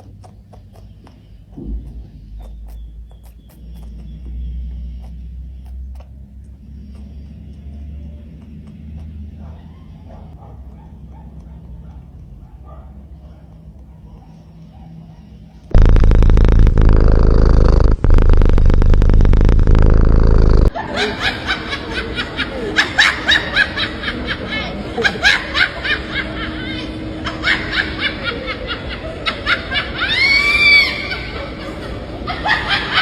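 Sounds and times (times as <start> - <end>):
loud distorted rumble: 15.7 - 20.8
person snickering: 15.7 - 21.4.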